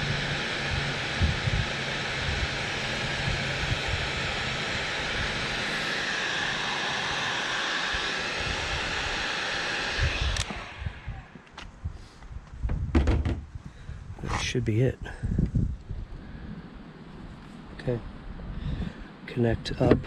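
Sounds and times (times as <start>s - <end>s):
heat gun blowing hiss: 0.0s - 11.5s.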